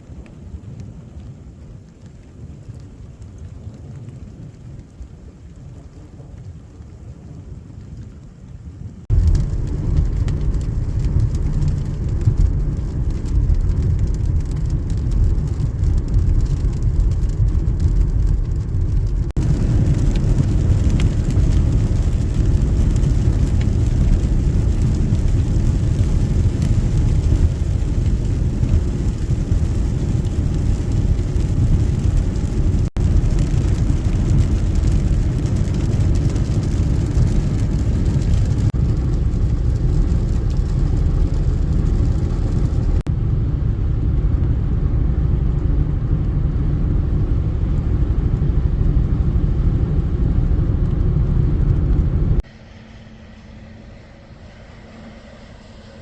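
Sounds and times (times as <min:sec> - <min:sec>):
thunder rumbling: 0:00.0 - 0:52.5
rain: 0:00.0 - 0:56.0.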